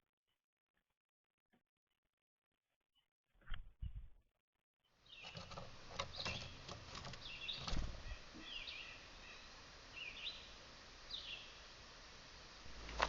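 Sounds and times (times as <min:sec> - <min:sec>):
songbirds chirping: 0:04.8 - 0:13.0.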